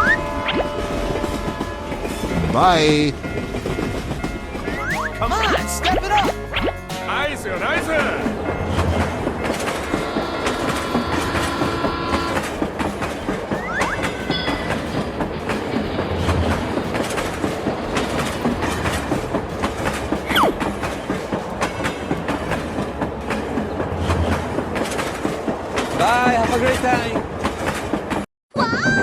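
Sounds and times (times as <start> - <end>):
high gliding squeals: 0.0 - 5.7, 7.8 - 15.3
train wheels clattering on rails: 0.0 - 29.0.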